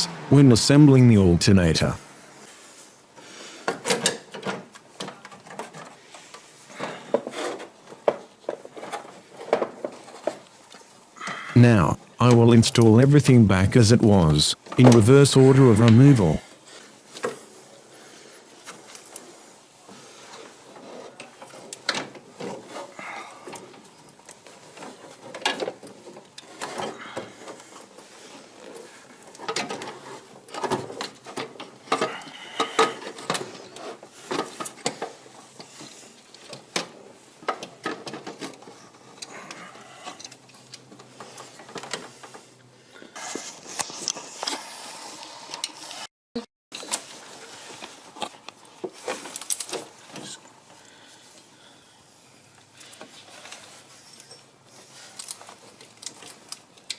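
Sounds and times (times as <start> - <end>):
hand tools clicking and scraping: 20.3 - 46.1.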